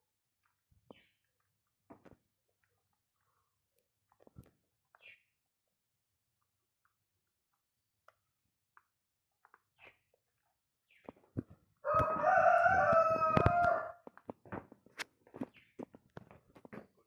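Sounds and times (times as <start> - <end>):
rooster crowing: 11.8 - 14.0.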